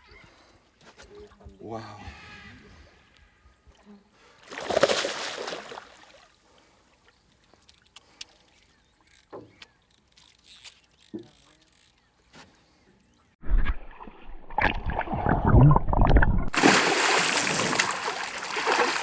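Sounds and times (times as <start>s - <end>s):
loud water splash: 16.5s - 19.0s.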